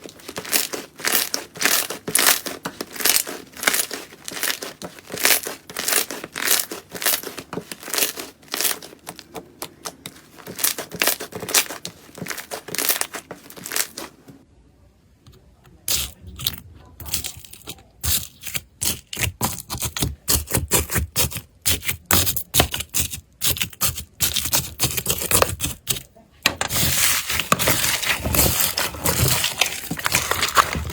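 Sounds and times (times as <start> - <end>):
slime crackling and popping: 0.3 - 14.0.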